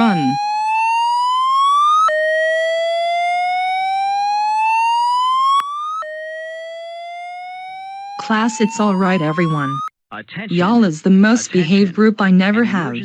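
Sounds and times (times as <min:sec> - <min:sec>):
fire alarm siren wailing: 0:00.0 - 0:09.9.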